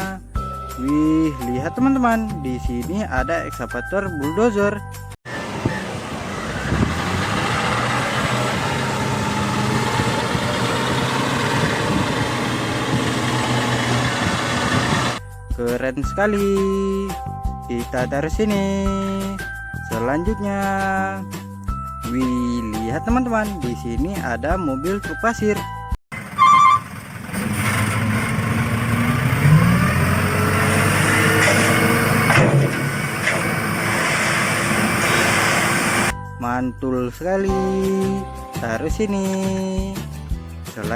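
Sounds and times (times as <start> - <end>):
truck engine running: 5.3 - 15.5, 26.2 - 36.3.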